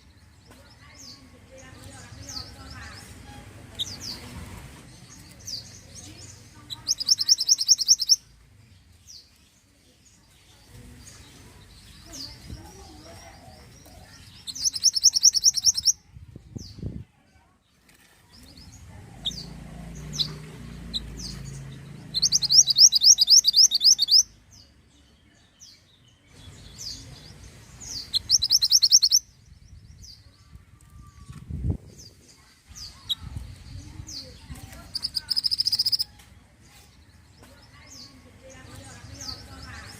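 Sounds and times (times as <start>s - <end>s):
thin bird chirps: 4.9s - 8.3s, 9.0s - 16.0s, 17.8s - 31.4s, 32.0s - 39.9s
bird trilling: 6.6s - 8.2s, 14.3s - 16.0s, 19.2s - 24.3s, 27.8s - 29.3s, 34.8s - 36.1s.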